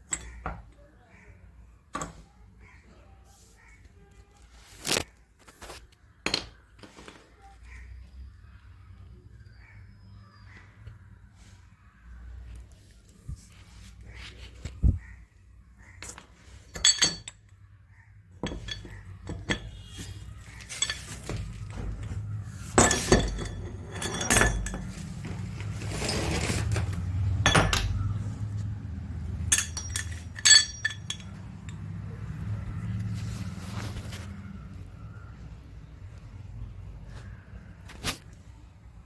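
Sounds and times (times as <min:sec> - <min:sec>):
metal tools clinking and knocking: 0:00.0 - 0:00.8, 0:16.0 - 0:17.6, 0:18.4 - 0:32.6.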